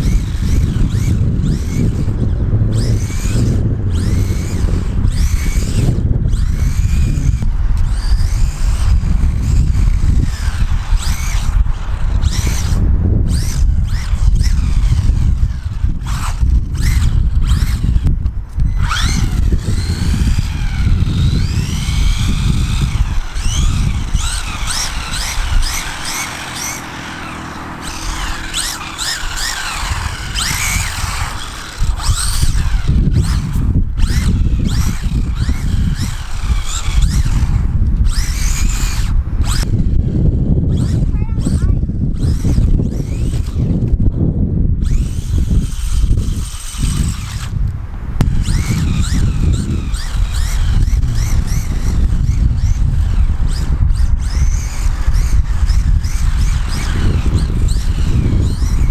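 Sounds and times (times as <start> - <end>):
rc car electric motor whining: 0.0 - 58.9
wind rumble on microphone: 0.0 - 58.9.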